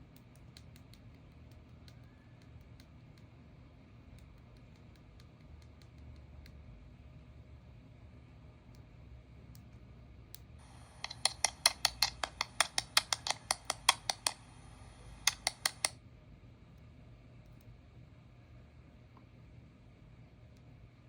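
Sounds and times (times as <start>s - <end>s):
small sharp clicks: 0.0s - 3.3s, 9.5s - 16.0s.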